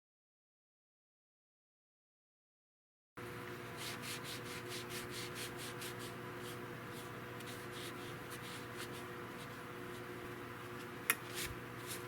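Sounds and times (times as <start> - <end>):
steady low hum: 3.2 - 12.0.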